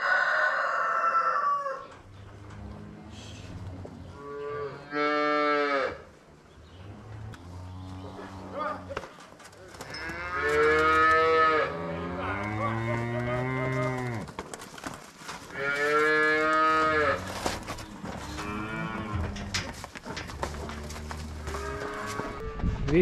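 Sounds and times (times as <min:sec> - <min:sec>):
cow mooing loudly: 0:09.9 - 0:14.2.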